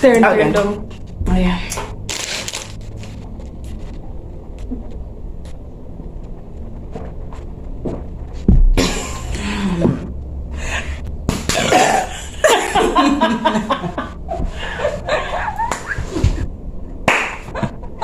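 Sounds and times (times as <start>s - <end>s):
person coughing: 8.8s - 9.4s, 11.5s - 12.4s
person laughing: 8.8s - 16.4s, 17.3s - 18.0s.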